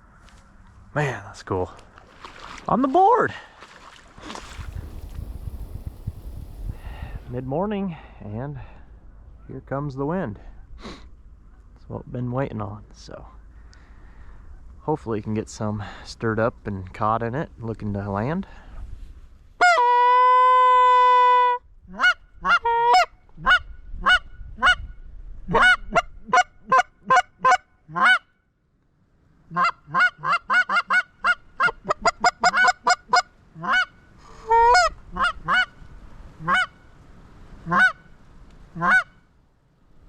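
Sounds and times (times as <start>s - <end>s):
goose honking: 25.5s - 28.3s, 29.5s - 35.8s, 37.6s - 38.1s, 38.8s - 39.2s.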